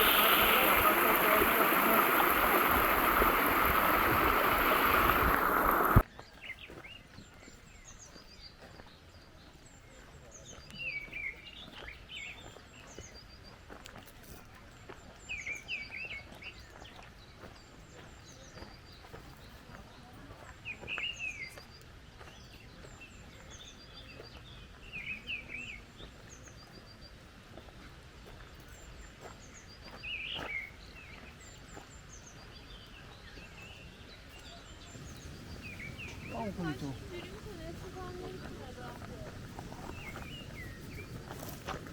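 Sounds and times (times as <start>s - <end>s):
birds chirping: 0.0s - 6.0s, 28.6s - 41.9s
faint high-pitched chirps: 0.0s - 6.0s
faint outdoor background: 0.0s - 41.9s.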